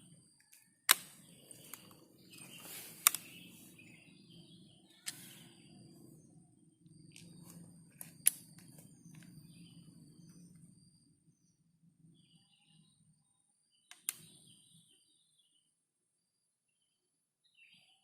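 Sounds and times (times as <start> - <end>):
sharp clicks: 0.4 - 3.5, 7.1 - 9.3, 13.9 - 14.4.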